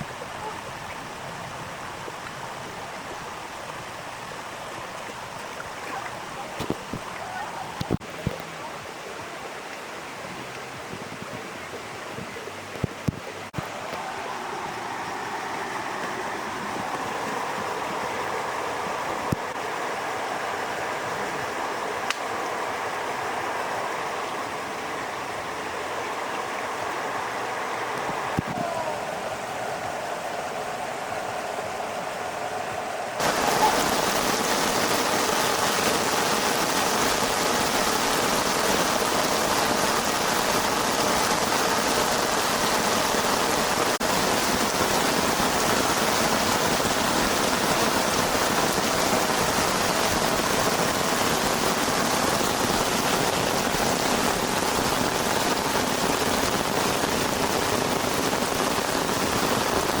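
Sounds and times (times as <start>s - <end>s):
heavy rain falling: 13.0s - 60.0s.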